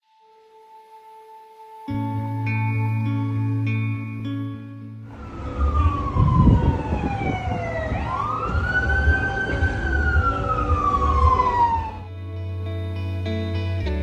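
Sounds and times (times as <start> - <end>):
wailing siren: 0.3 - 4.4, 5.0 - 12.1
low rumble: 2.0 - 14.0.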